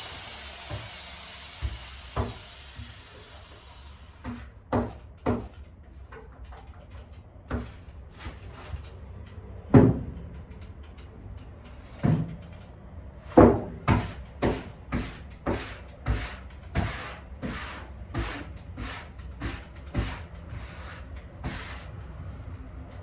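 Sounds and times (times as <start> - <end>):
rubbing strokes on lacquered wood: 13.9 - 21.9.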